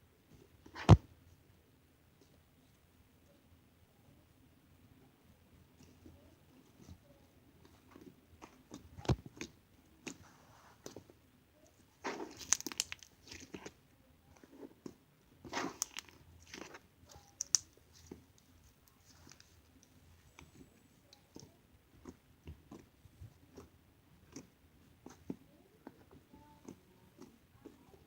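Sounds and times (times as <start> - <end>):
slime crackling and popping: 12.0 - 13.8, 15.4 - 19.6.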